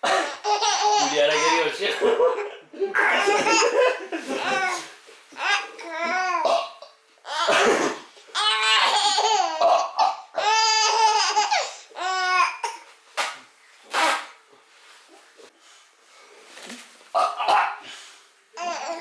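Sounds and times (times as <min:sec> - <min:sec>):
baby laughing hysterically: 0:00.4 - 0:04.8.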